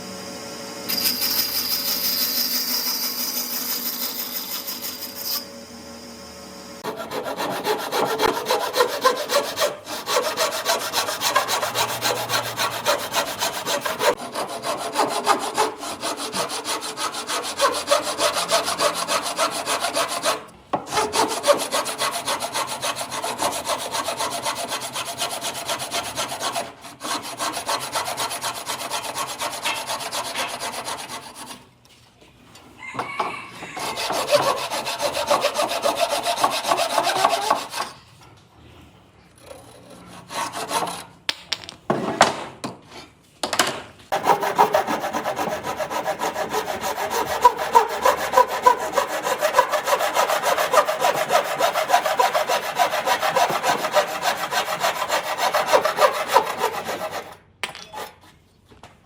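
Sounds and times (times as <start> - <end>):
hand sanding or sawing wood: 6.8 - 31.7, 33.8 - 38.0, 40.0 - 41.1, 44.1 - 57.4.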